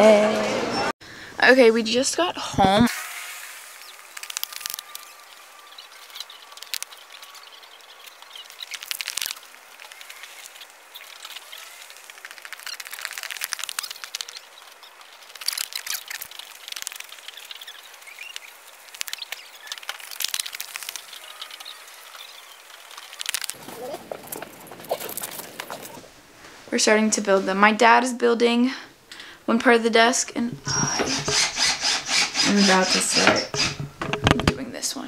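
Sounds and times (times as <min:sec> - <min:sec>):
faint hiss: 0:01.1 - 0:05.4
sharp crackling clicks: 0:03.8 - 0:26.1.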